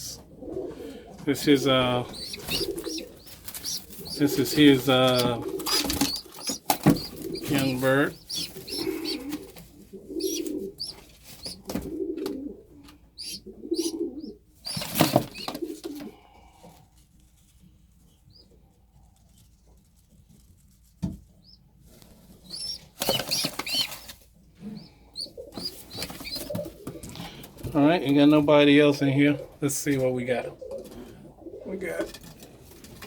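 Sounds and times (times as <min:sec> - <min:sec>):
pigeons cooing: 0:00.0 - 0:16.6, 0:22.4 - 0:27.7, 0:30.5 - 0:31.8
wings flapping: 0:01.3 - 0:12.5, 0:13.2 - 0:16.2, 0:22.1 - 0:24.2, 0:25.2 - 0:27.6.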